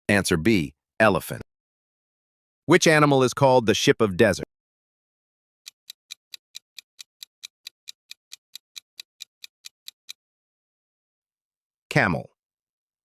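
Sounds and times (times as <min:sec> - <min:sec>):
clock ticking: 0:05.6 - 0:10.2.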